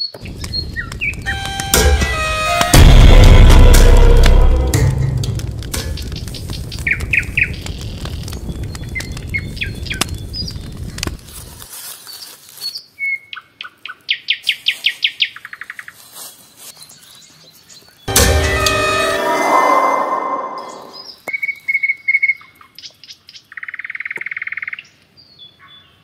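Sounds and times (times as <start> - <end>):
low rumble: 0.3 - 9.3, 18.1 - 21.0.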